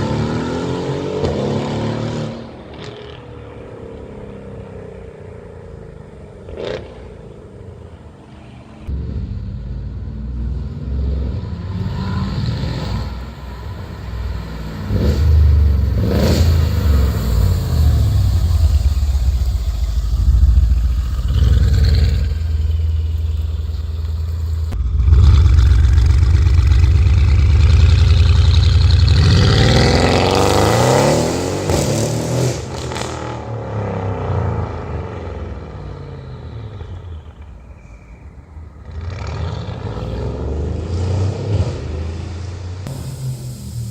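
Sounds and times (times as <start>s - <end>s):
car engine revving: 8.8s - 37.8s.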